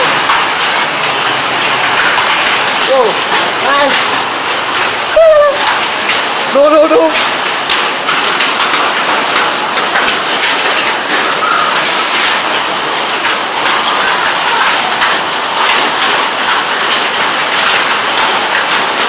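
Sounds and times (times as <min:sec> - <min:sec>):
hail and heavy rain pelting: 0:00.0 - 0:19.0.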